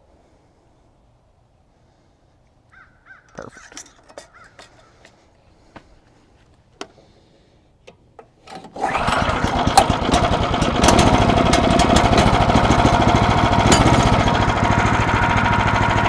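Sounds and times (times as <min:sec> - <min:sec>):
sawmill engine running: 0:08.5 - 0:16.0.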